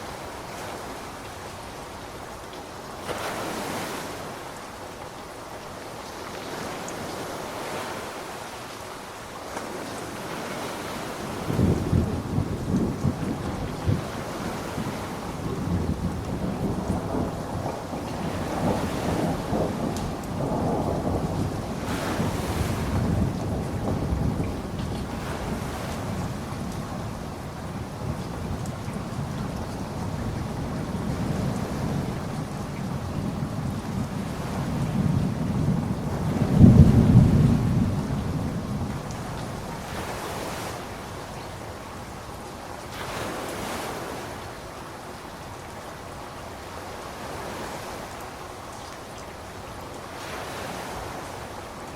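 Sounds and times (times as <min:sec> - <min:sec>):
rain: 0:00.0 - 0:51.9
rumble of thunder: 0:11.3 - 0:40.2.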